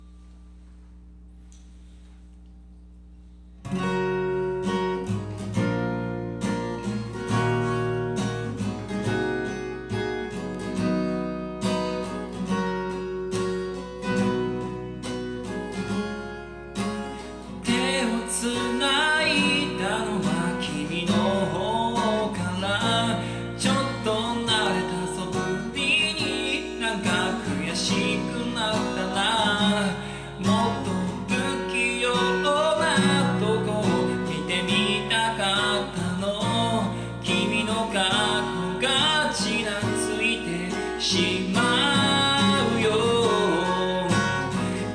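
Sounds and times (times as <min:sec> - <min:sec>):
acoustic guitar strumming: 0:03.6 - 0:44.9
person singing: 0:17.6 - 0:44.9.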